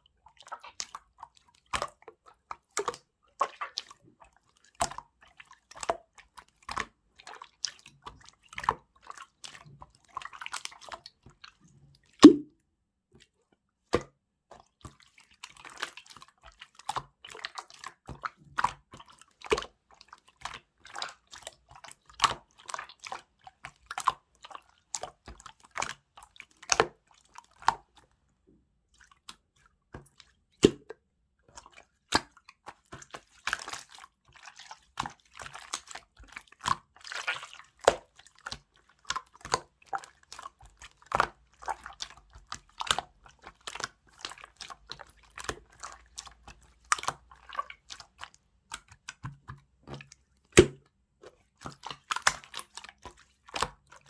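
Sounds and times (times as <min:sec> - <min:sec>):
slime squelching by hand: 0:38.5 - 0:54.0.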